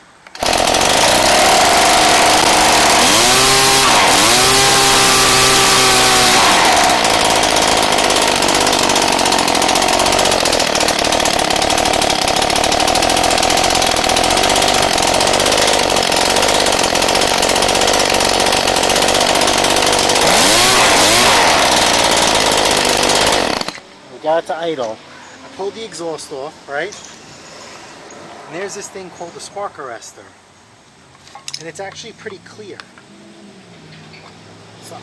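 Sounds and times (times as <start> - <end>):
two-stroke blower engine idling: 0.3 - 23.8.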